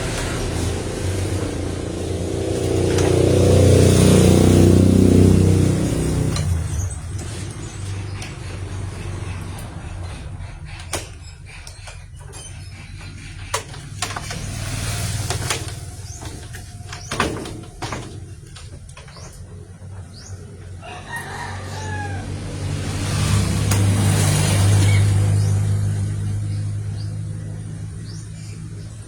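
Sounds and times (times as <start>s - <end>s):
clicks and knocks of hands working: 0.0s - 20.4s, 22.9s - 25.1s
rooster crowing: 20.7s - 22.9s.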